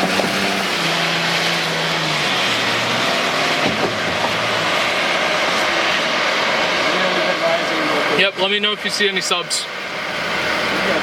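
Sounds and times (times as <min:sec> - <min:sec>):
low engine hum: 0:00.0 - 0:11.0
road and wind noise: 0:00.0 - 0:11.0.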